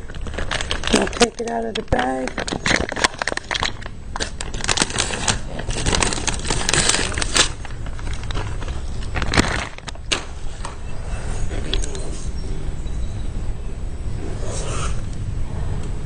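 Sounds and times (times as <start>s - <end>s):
packaging crinkling and rustling: 0.0s - 10.9s.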